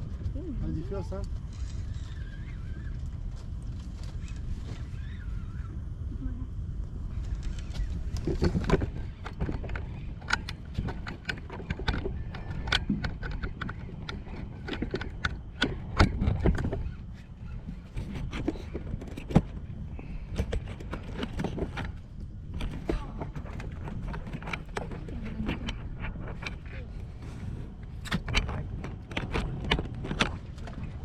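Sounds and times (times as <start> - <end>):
low rumble: 0.0 - 31.0
knocks clicks and scrapes: 7.2 - 31.0.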